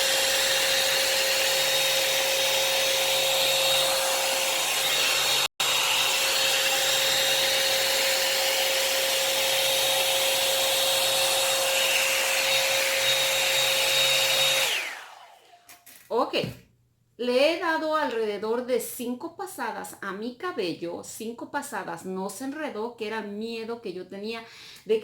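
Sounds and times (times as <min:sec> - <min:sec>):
hot-air dryer brush running: 0:00.0 - 0:15.8.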